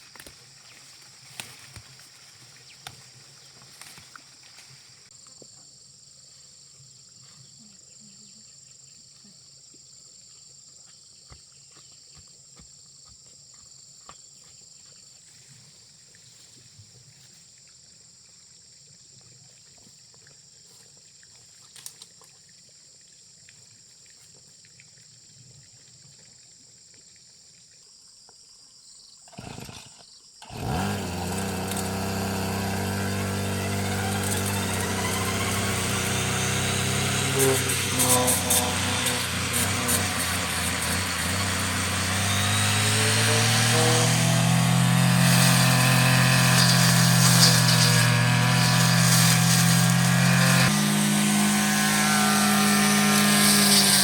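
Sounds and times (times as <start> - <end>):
rustle: 0.0 - 11.0, 19.4 - 22.5.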